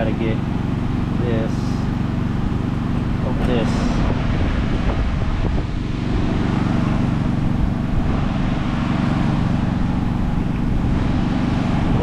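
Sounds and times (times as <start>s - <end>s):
low mechanical hum: 0.0s - 12.0s.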